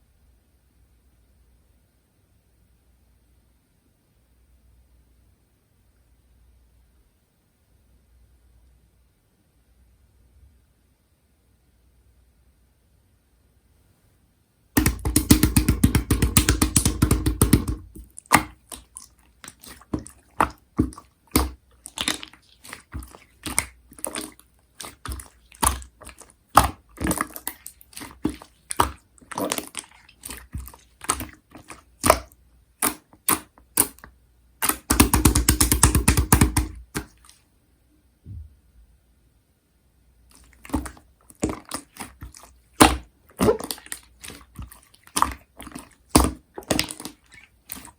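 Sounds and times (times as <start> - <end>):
slime squishy popping: 14.8 - 37.3, 40.4 - 47.9.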